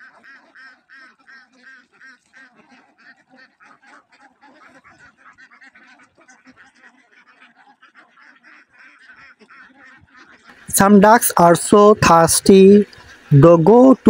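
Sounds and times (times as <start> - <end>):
flock of ducks quacking: 0.0 - 14.0.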